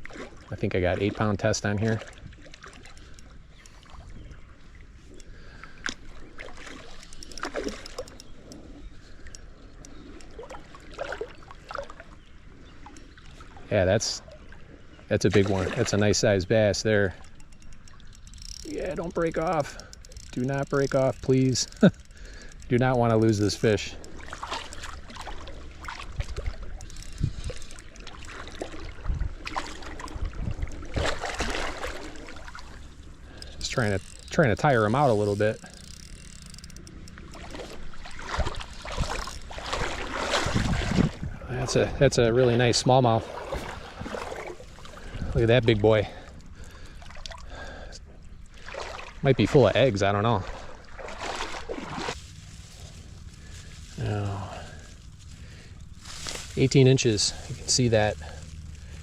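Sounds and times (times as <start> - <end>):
creek water running: 0.0 - 59.0
fishing reel clicks: 2.1 - 4.0, 6.7 - 10.6, 16.2 - 24.9, 26.3 - 28.4, 32.9 - 38.0
short splashes: 5.4 - 8.2, 9.9 - 12.2, 12.8 - 17.4, 23.3 - 36.2, 37.3 - 47.8, 48.5 - 59.0.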